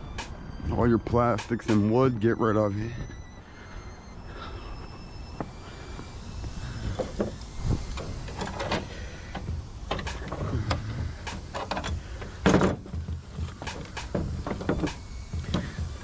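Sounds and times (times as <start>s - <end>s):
metal and plastic parts clanking: 6.8s - 16.0s.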